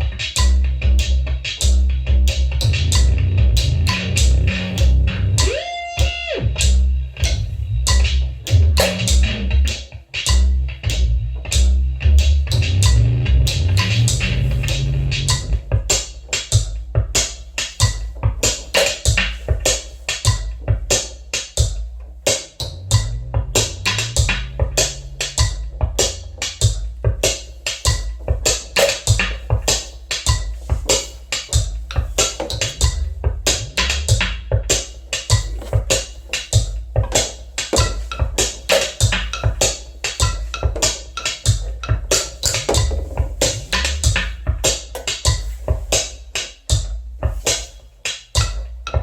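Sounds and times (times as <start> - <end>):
low bass line: 0.0 - 15.8, 22.6 - 27.1, 32.6 - 34.7, 41.7 - 44.7
sharp clicks and knocks beat: 0.0 - 49.0.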